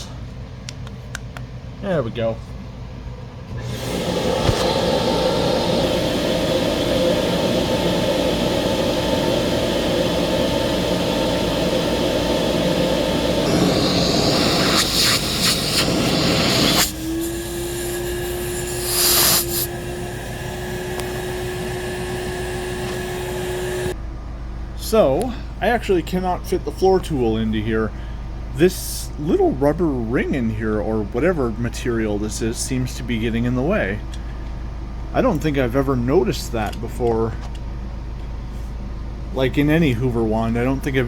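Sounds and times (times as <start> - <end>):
vacuum motor hum: 3.4 - 24.0
vacuum cleaner air rushing: 3.5 - 24.0
short hiss: 18.4 - 19.7.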